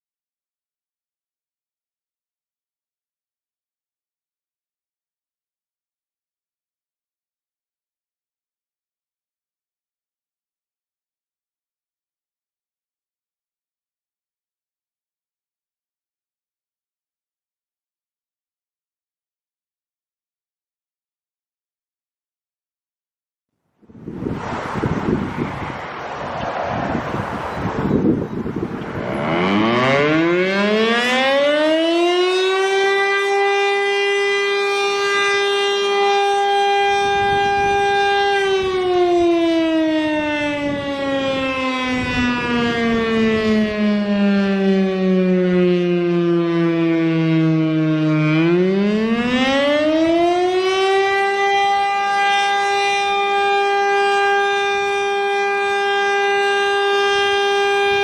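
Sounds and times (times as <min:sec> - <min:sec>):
warning siren wailing: 0:24.0 - 0:58.0.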